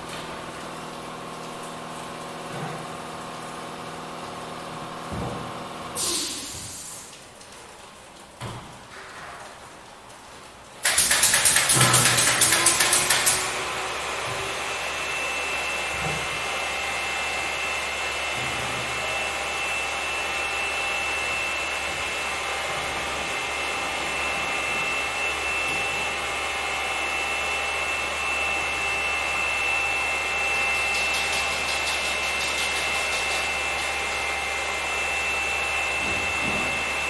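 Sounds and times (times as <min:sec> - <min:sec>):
pulsing power tool: 0:10.8 - 0:37.0.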